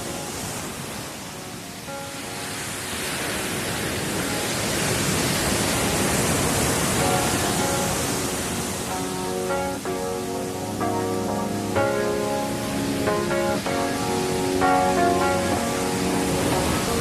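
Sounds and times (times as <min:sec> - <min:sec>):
surf-like noise wash: 0:00.0 - 0:17.0.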